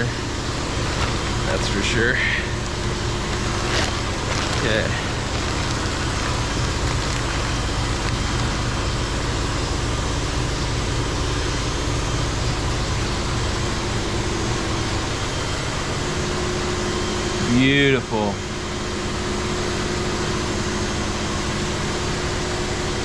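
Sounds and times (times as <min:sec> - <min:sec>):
shop machinery humming: 0:00.0 - 0:20.6.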